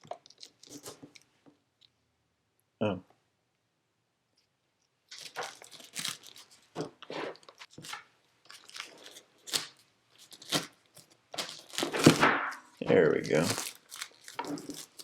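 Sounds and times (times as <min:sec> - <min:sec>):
box seal ripping and scraping: 0:05.2 - 0:12.4, 0:13.1 - 0:15.0.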